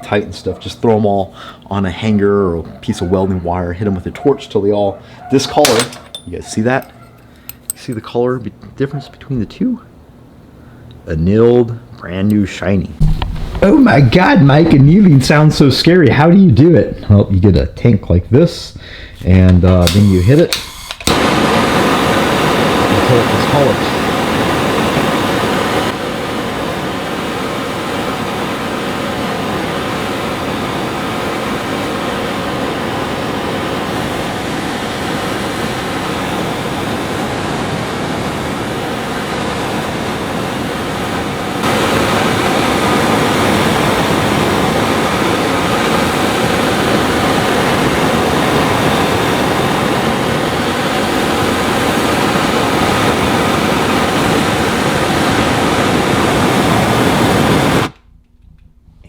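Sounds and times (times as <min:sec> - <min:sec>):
gas torch hissing: 0:13.0 - 0:17.1, 0:18.5 - 0:57.9.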